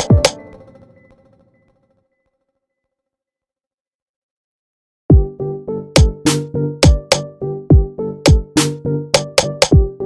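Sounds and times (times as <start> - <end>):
kick drums: 0.0 - 0.4, 5.1 - 5.3, 6.0 - 6.2, 6.8 - 8.6, 9.7 - 9.9
electronic background music: 0.0 - 1.7, 5.1 - 10.0.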